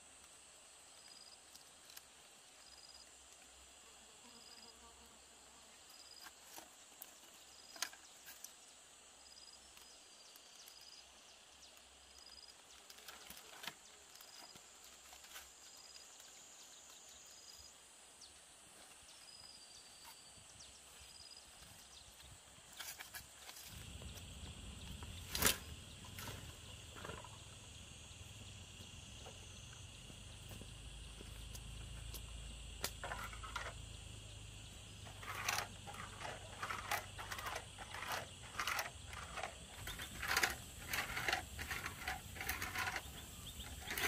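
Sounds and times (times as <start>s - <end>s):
insects droning and chirping: 0.0s - 44.0s.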